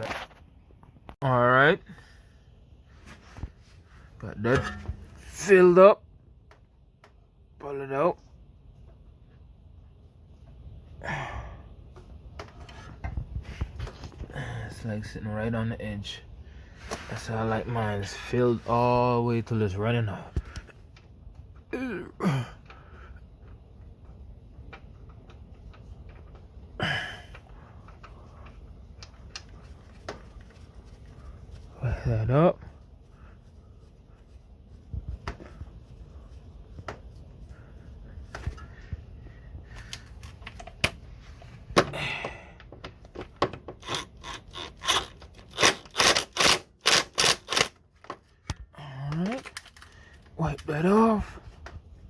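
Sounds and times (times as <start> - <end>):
man grunting: 21.7 - 22.6.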